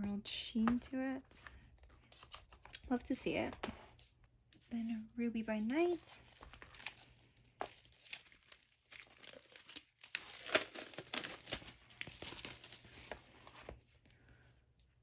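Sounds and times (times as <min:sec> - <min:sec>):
plastic wrapping crinkling: 0:05.6 - 0:13.8.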